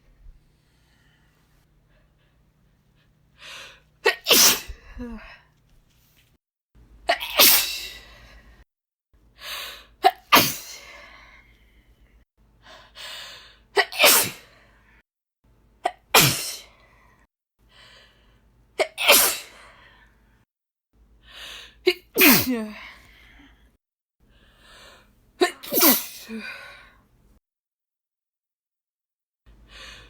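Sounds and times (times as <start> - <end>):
woman sneezing: 4.0 - 5.3, 7.1 - 8.0, 10.0 - 10.9, 13.8 - 14.4, 15.9 - 16.7, 18.8 - 19.6, 21.9 - 23.0, 25.4 - 26.5.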